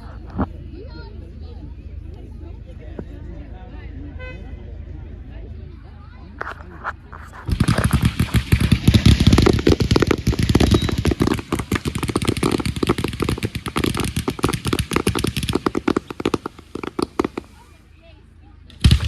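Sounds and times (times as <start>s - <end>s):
fireworks crackling bangs: 7.2s - 17.8s, 18.7s - 19.0s.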